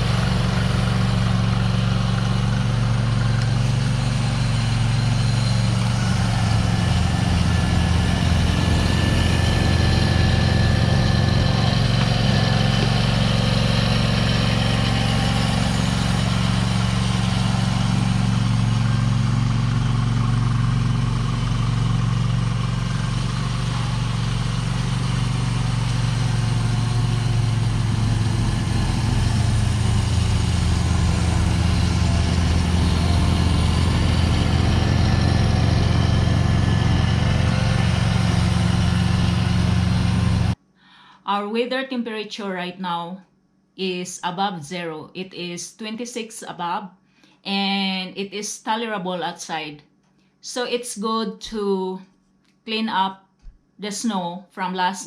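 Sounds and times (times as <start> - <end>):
snow blower engine running: 0.0 - 40.6.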